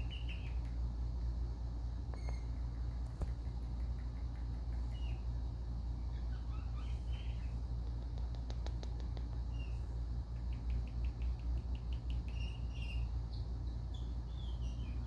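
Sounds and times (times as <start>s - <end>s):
parrot chirping: 0.0s - 0.7s, 6.0s - 7.6s, 12.3s - 15.0s
steady low hum: 0.0s - 15.0s.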